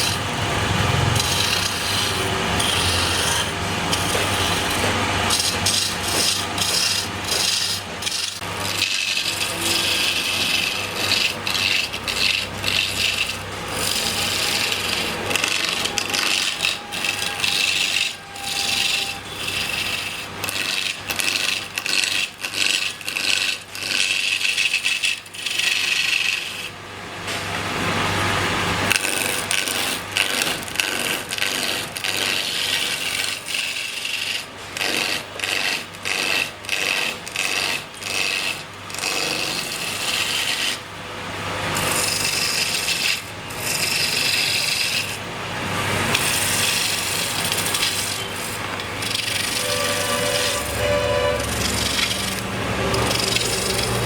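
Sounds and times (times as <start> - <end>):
low motor hum: 0.0 - 20.5, 45.3 - 54.0
lathe tool shaving spinning wood: 0.0 - 26.8, 27.6 - 54.0.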